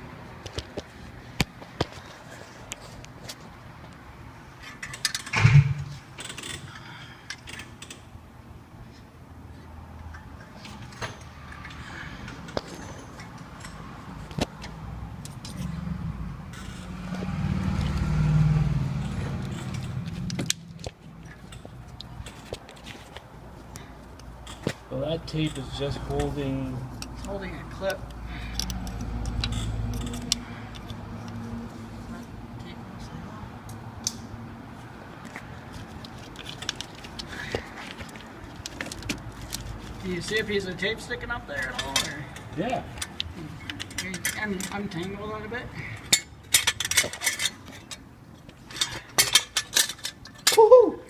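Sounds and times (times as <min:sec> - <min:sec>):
vehicle rumble passing: 0:09.3 - 0:47.7.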